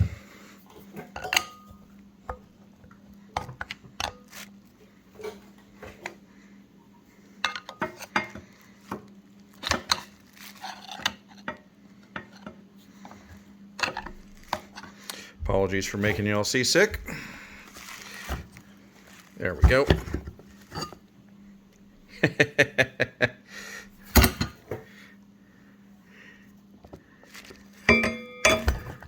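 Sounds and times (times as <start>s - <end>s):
metal parts and tools clanking: 27.9s - 29.0s.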